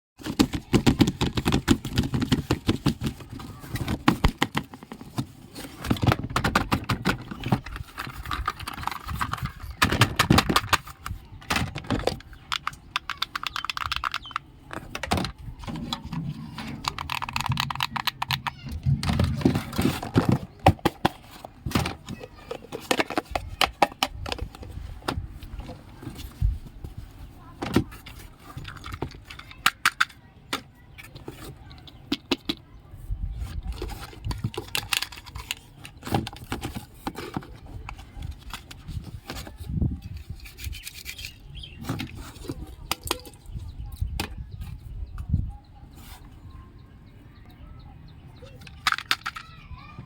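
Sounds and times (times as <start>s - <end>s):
rustling and crinkling: 0.2s - 46.7s
plastic toy pieces clicking: 6.3s - 15.9s, 16.6s - 21.2s, 28.5s - 32.6s, 33.7s - 39.4s, 48.6s - 49.6s.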